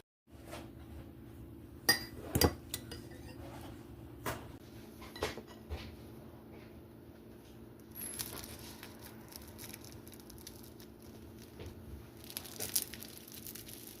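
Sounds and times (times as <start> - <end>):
toast crunching: 8.2 - 14.0.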